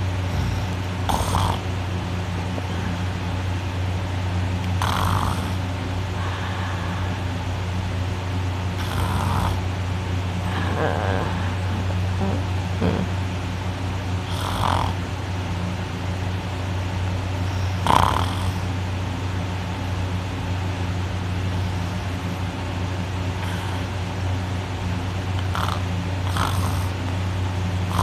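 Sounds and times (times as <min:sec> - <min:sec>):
person snoring loudly: 0:00.0 - 0:01.7, 0:04.7 - 0:05.6, 0:08.8 - 0:09.6, 0:10.4 - 0:13.1, 0:14.2 - 0:15.0, 0:17.6 - 0:18.7, 0:23.4 - 0:24.0, 0:25.4 - 0:27.0
breathy snorts: 0:00.0 - 0:03.3, 0:04.7 - 0:07.5, 0:08.8 - 0:09.7, 0:10.4 - 0:13.1, 0:14.2 - 0:15.0, 0:17.4 - 0:18.7, 0:23.4 - 0:24.2, 0:25.4 - 0:27.1.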